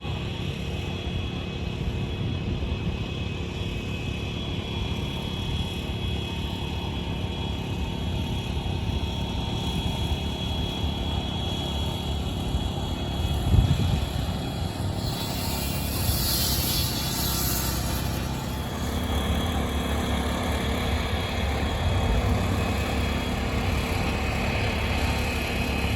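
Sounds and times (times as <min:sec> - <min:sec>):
construction machinery engines rumbling: 0:00.0 - 0:25.9
faint high whine: 0:00.1 - 0:25.9
hissing noise: 0:11.8 - 0:25.8.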